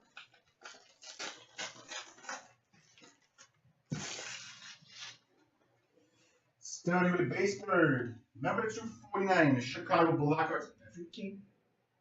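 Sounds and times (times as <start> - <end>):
card pack crinkling rustles: 0.0 - 5.2.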